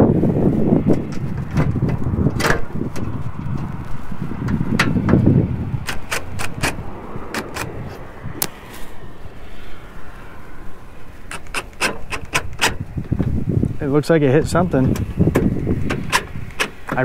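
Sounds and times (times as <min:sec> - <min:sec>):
low rumble: 0:00.0 - 0:11.4.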